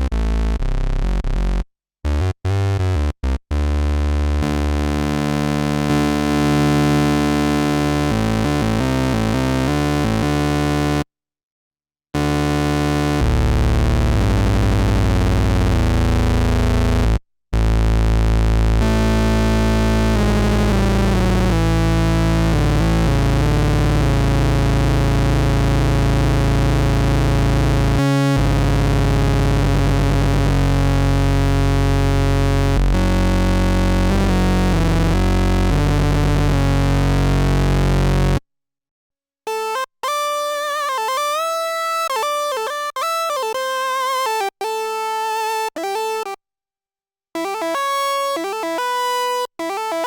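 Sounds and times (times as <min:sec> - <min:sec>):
synthesizer bass patch: 0:13.2 - 0:17.1, 0:18.8 - 0:38.4
synthesizer notes gliding: 0:13.2 - 0:17.1, 0:18.8 - 0:38.4.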